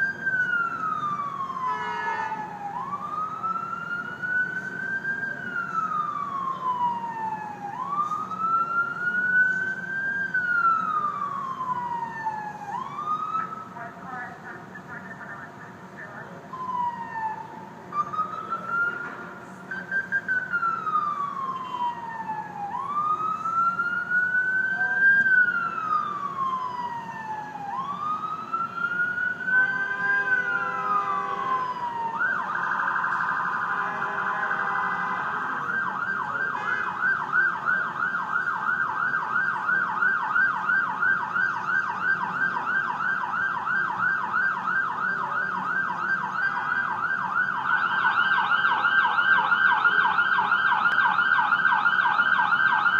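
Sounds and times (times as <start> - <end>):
siren wail: 0.0 - 15.2, 15.8 - 52.9
siren fast yelp: 16.6 - 19.0, 19.7 - 52.9.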